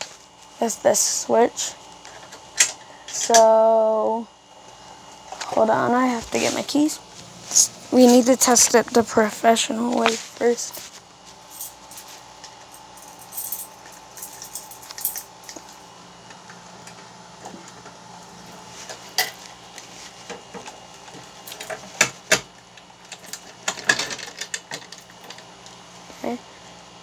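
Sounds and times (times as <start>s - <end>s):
keys jangling: 11.5s - 12.2s, 12.8s - 15.8s.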